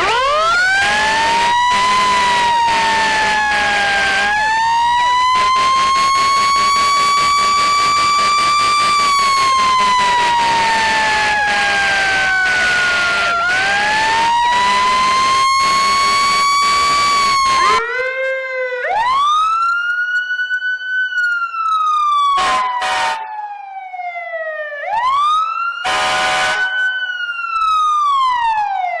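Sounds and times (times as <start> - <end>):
siren wailing: 0.0 - 29.0
harsh horn blasts: 5.3 - 17.8, 22.4 - 23.2, 25.9 - 26.8.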